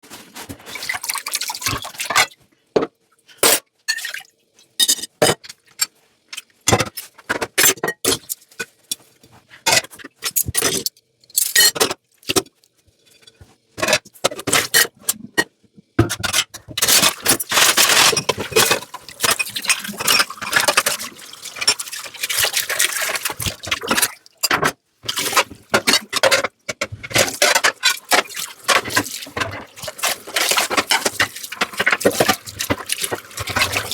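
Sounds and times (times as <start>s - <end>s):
dishes and glassware clinking: 4.8s - 5.9s
water running and splashing: 16.8s - 26.3s, 27.0s - 33.9s.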